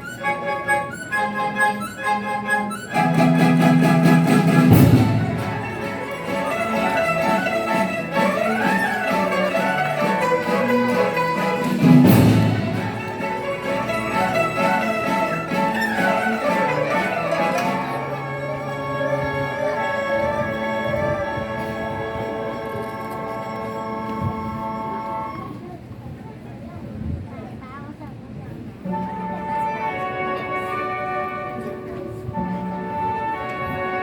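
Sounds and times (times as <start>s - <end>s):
bowed strings melody: 0.0s - 25.3s
traditional orchestra playing: 0.0s - 25.6s, 28.8s - 34.0s.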